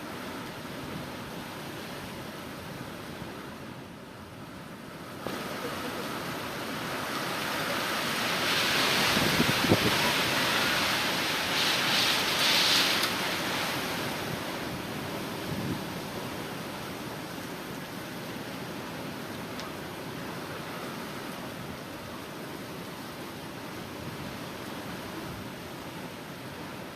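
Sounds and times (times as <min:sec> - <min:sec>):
strong gusting wind: 0:05.3 - 0:17.4.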